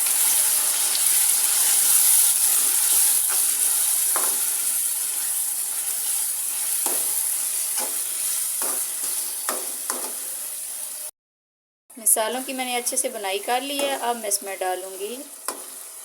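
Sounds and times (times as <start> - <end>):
food sizzling in hot oil: 0.0 - 11.1, 12.1 - 16.0
spoon scraping pan: 5.3 - 10.3.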